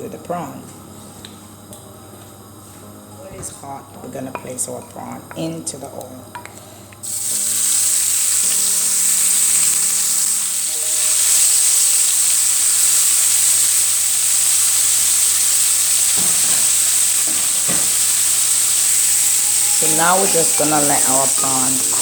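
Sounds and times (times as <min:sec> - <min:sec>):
prawns sizzling in hot oil: 0:07.0 - 0:22.0.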